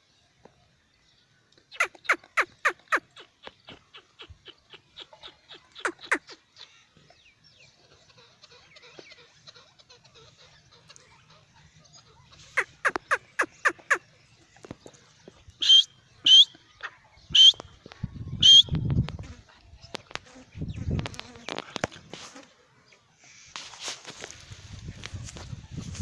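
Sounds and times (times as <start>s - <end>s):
francolin calling: 1.7s - 6.8s, 12.0s - 14.1s, 15.6s - 18.8s.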